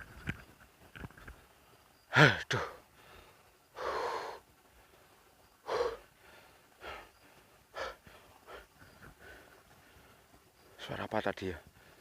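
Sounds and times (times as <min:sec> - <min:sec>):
man breathing heavily: 0:02.1 - 0:10.8, 0:11.6 - 0:12.0.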